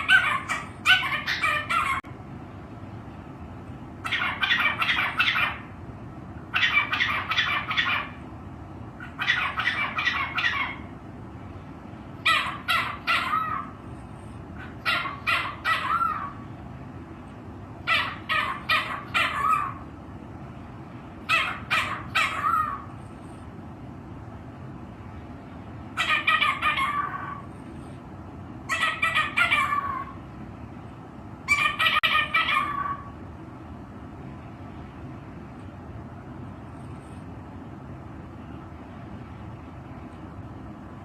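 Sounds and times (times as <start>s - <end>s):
parrot squawking: 0.0s - 2.2s, 4.0s - 5.8s, 6.5s - 8.3s, 9.0s - 10.9s, 12.2s - 16.5s, 17.8s - 19.9s, 21.2s - 23.4s, 25.9s - 27.9s, 28.6s - 30.2s, 31.4s - 33.2s
steady low hum: 0.0s - 41.0s.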